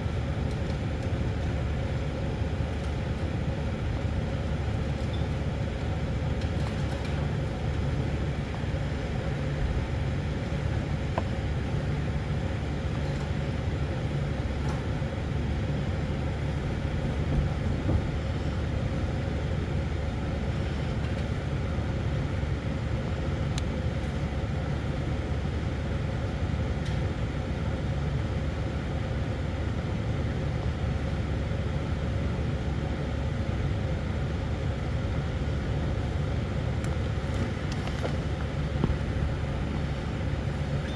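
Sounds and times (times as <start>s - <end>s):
vehicle low rumble: 28.4s - 40.9s.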